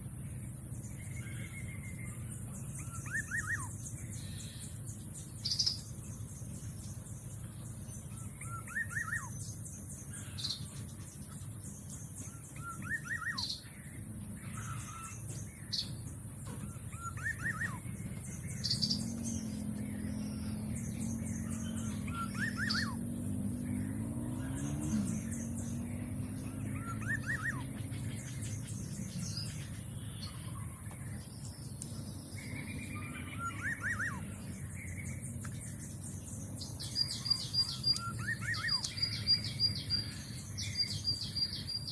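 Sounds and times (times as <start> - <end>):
insect hiss: 0.0 - 30.3
birds chirping: 0.0 - 41.9
low droning hum: 13.5 - 38.2.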